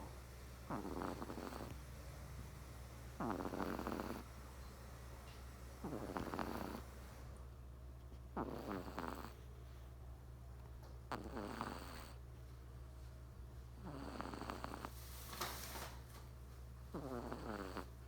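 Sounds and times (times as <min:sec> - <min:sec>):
kitten snoring: 0:00.0 - 0:04.5, 0:05.7 - 0:07.1, 0:08.2 - 0:09.9, 0:11.0 - 0:12.3, 0:13.8 - 0:15.2, 0:16.9 - 0:18.0.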